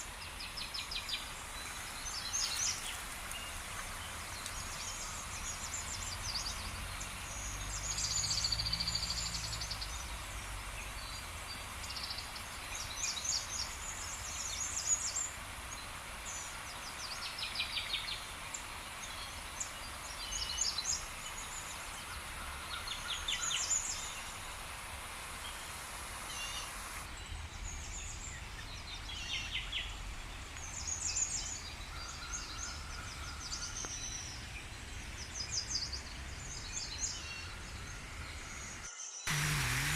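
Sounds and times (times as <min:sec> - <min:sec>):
small birds chirping: 0:00.0 - 0:39.4
outdoor hiss: 0:00.0 - 0:39.9.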